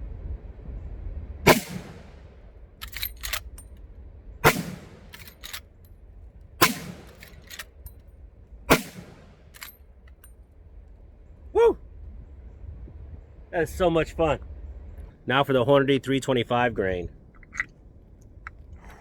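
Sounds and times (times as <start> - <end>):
rifle shots echoing: 1.5 - 3.5, 4.4 - 5.6, 6.6 - 7.6, 8.7 - 9.8
rifle lever metallic clicks: 2.8 - 3.8, 4.5 - 5.7, 6.6 - 8.1, 8.7 - 10.3, 17.4 - 19.0.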